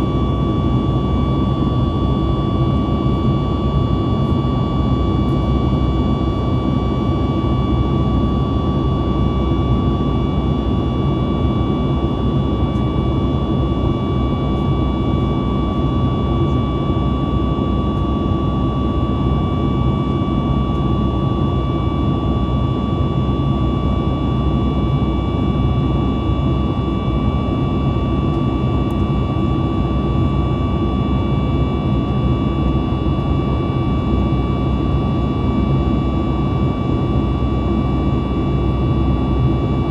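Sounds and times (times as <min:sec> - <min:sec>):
airplane cabin rumble: 0:00.0 - 0:39.9
thin engine whine: 0:00.0 - 0:39.9.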